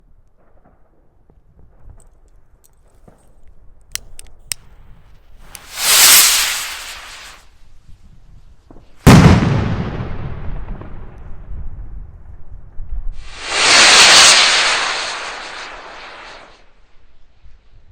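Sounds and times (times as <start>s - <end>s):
rocket launch whoosh: 5.5s - 7.4s, 13.2s - 16.7s
rocket bursting bang: 5.6s - 7.4s, 9.1s - 10.9s, 13.2s - 16.6s.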